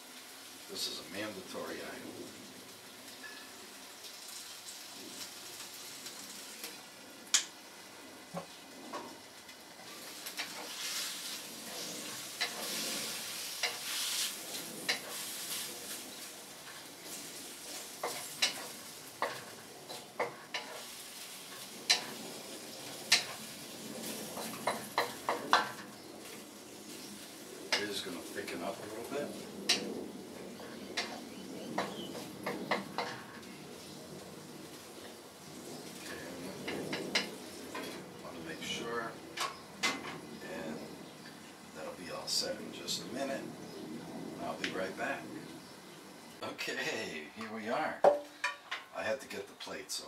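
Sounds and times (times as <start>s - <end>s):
stir-fry sizzling in a pan: 0.0s - 49.4s
utensil clicking and scraping pan: 11.7s - 14.2s, 16.6s - 20.9s, 21.5s - 22.2s, 23.0s - 23.4s.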